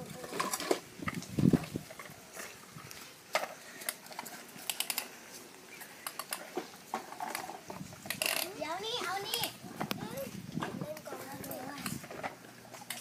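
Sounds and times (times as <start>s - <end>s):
plastic toy vehicles clicking: 3.3s - 5.2s, 5.9s - 10.0s, 10.7s - 13.0s.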